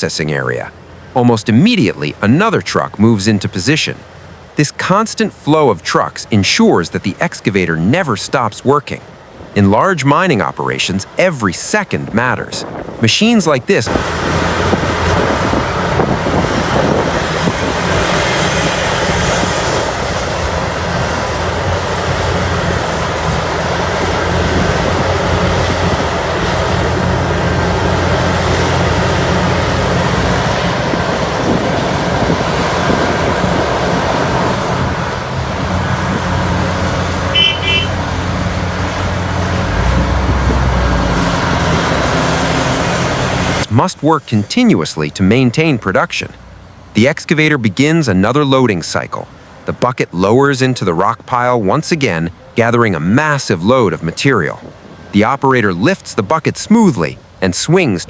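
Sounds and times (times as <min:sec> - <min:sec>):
heavy diesel machinery rumble: 0:12.6 - 0:47.2
short beeps: 0:37.3 - 0:38.0.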